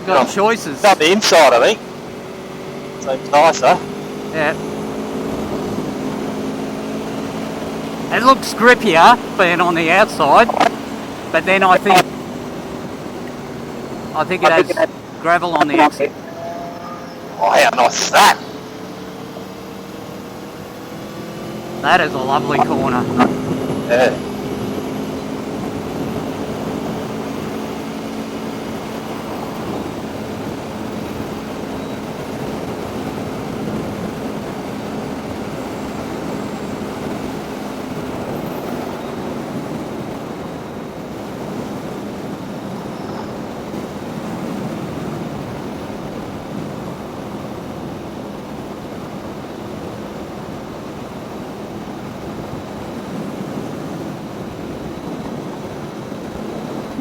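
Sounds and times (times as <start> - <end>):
faint motorcycle engine tone: 0.9 - 41.4
wind rush over microphone: 22.4 - 57.0.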